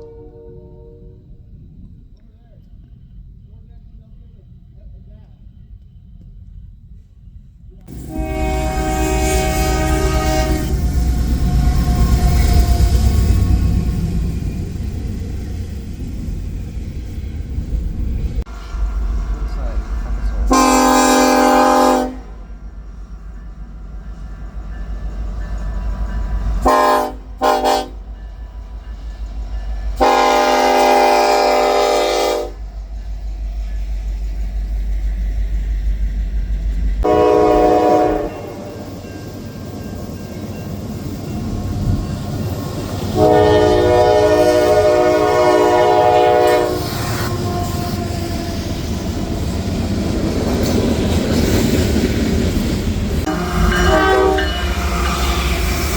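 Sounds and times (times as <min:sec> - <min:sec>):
locomotive air horn blasts: 0:00.0 - 0:01.2, 0:07.9 - 0:13.2, 0:20.5 - 0:22.4, 0:26.6 - 0:28.0, 0:30.0 - 0:32.6, 0:37.0 - 0:38.8, 0:43.1 - 0:48.4, 0:53.2 - 0:55.8
train rumble: 0:00.0 - 0:55.9.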